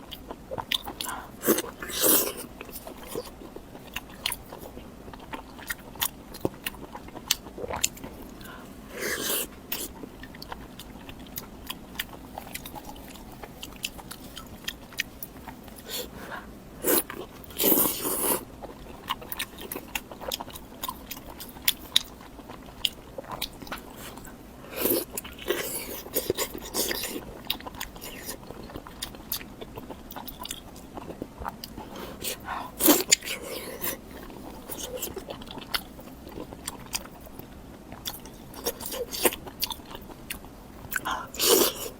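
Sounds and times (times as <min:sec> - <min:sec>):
person chewing food: 0:00.0 - 0:41.9.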